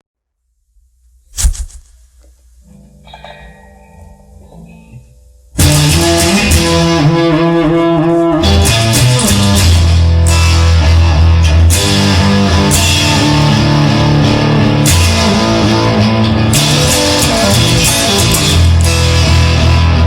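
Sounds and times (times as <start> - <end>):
instrumental rock music: 2.6 - 20.0
heavy bass line: 8.3 - 20.0.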